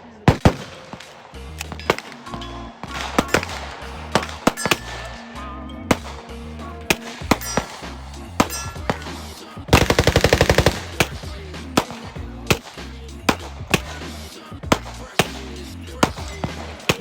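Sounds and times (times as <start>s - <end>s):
background music: 0.0s - 17.0s
gunshots: 0.2s - 5.3s, 5.9s - 6.3s, 6.9s - 17.0s
rapid burst of gunfire: 9.7s - 14.0s.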